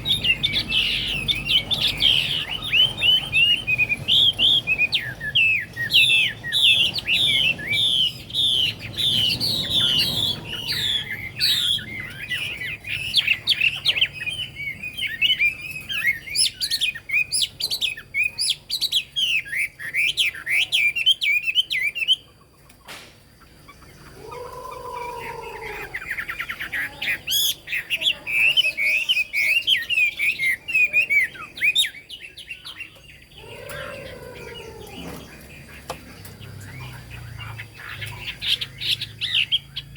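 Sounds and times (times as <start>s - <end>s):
bird singing trills and warbles: 0.0s - 39.9s
lower falling bird call: 22.8s - 27.6s, 32.7s - 39.9s.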